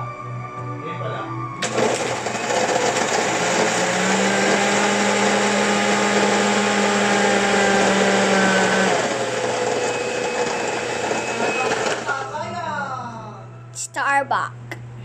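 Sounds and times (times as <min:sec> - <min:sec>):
blender motor whine: 0:01.6 - 0:12.4.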